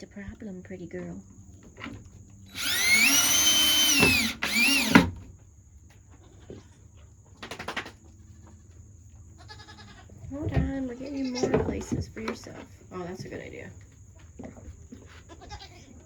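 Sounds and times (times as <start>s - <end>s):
cordless drill driving a screw: 2.5s - 5.1s.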